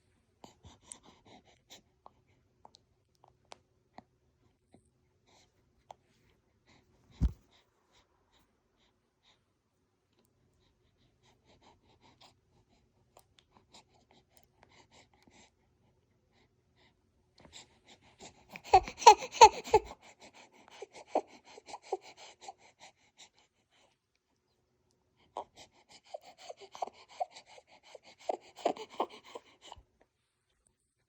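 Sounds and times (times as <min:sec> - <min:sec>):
baby whimpering: 0:18.6 - 0:20.0, 0:28.2 - 0:29.5.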